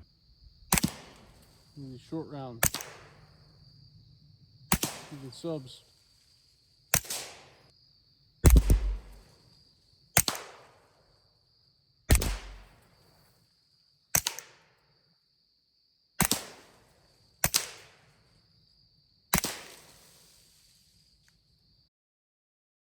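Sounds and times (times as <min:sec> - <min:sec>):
suppressed pistol shots: 0:08.4 - 0:09.2, 0:12.1 - 0:12.7.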